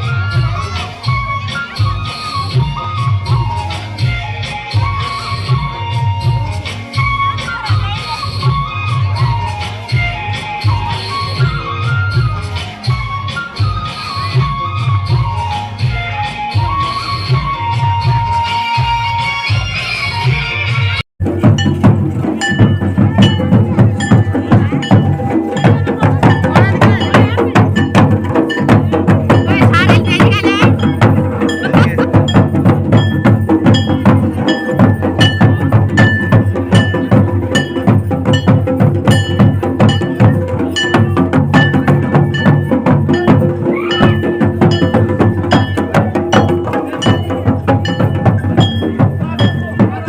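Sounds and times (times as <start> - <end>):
drums beating steady rhythm: 0.0 - 50.0
ringing metallic strikes: 21.3 - 50.0.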